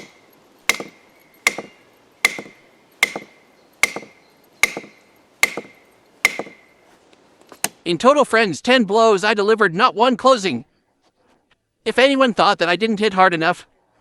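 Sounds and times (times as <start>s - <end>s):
knife spine whacking wood: 0.0s - 6.7s.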